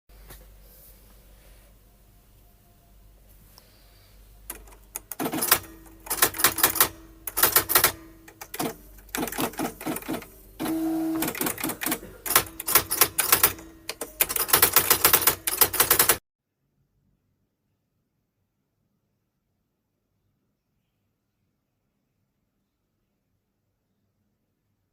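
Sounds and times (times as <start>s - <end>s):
electronic typewriter typing: 4.5s - 16.2s
typewriter motor whir: 4.5s - 16.2s.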